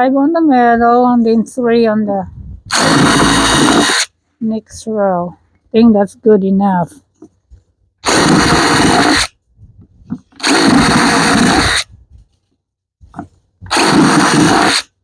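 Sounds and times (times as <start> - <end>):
power drill boring through plastic: 2.7 - 4.1, 8.0 - 9.3, 10.3 - 11.9, 13.6 - 15.0.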